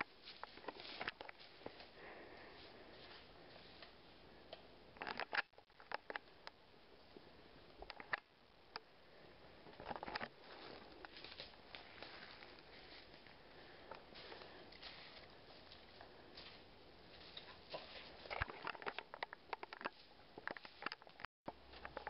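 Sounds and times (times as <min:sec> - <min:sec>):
footsteps crunching dry leaves: 0:00.2 - 0:02.0, 0:14.1 - 0:18.3.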